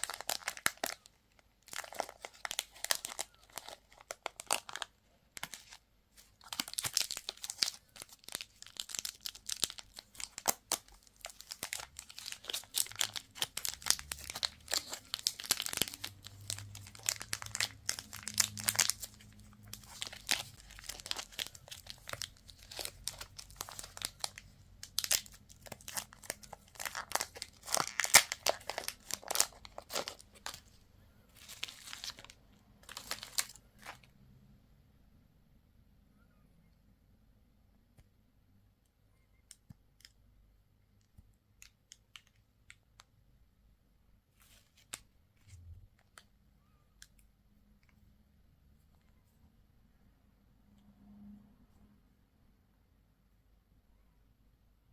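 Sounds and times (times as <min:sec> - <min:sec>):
candy wrappers crinkling: 0:00.0 - 0:34.1.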